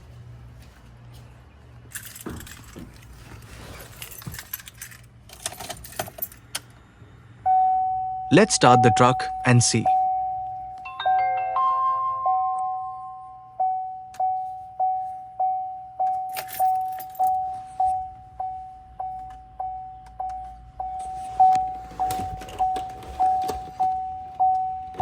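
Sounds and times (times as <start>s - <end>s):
keys jingling and clicking: 1.9s - 6.7s, 16.0s - 17.5s, 21.0s - 23.9s
dashboard warning chime dinging: 7.4s - 25.0s.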